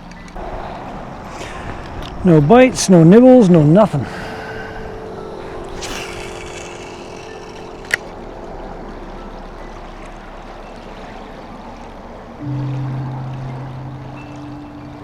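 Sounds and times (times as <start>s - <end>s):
lake water lapping: 0.0s - 12.4s
music: 0.0s - 15.0s
sharp click: 5.7s - 8.1s.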